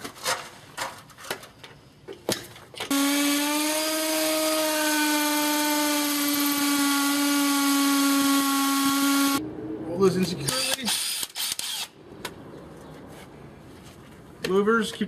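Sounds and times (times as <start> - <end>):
power drill running: 2.9 - 9.4.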